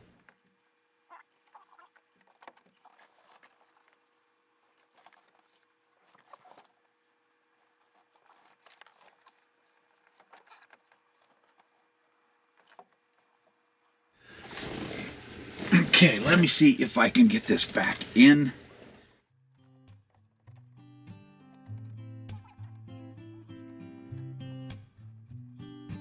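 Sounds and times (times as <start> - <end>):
small plastic parts clicking and rattling: 1.4 - 6.8, 7.6 - 13.5.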